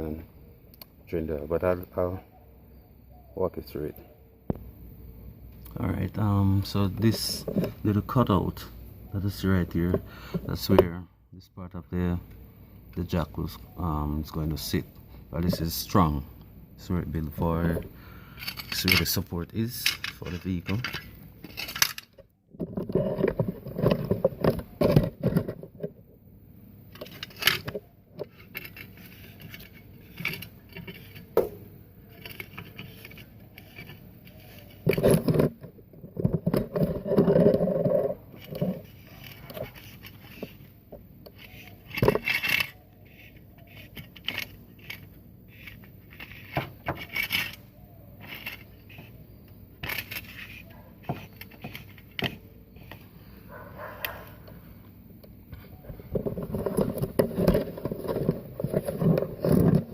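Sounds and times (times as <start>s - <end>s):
car jack scraping and clanking: 18.4s - 26.0s.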